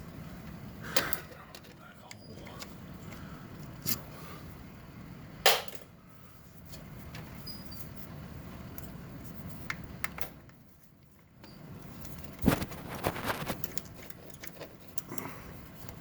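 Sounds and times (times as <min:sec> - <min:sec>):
low rustling handling noise: 0:10.7 - 0:16.0.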